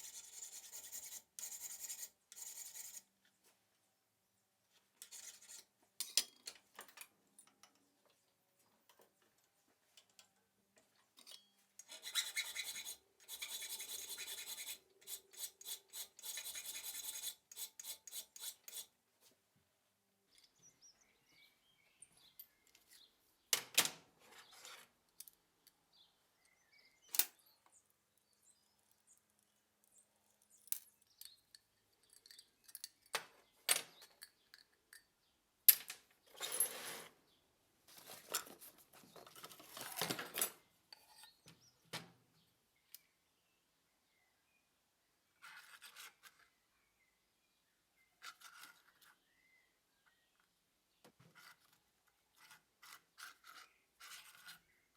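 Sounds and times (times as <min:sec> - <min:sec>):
rasping abrasion on steel: 0:11.8 - 0:18.9.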